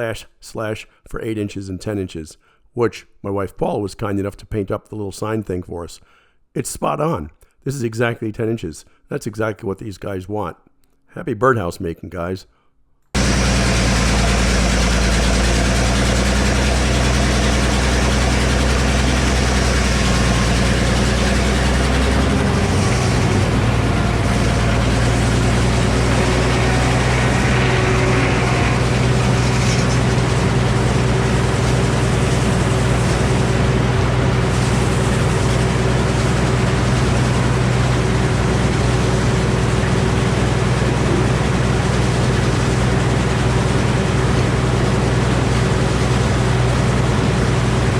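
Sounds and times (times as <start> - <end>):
sawmill engine running: 13.2 - 47.9.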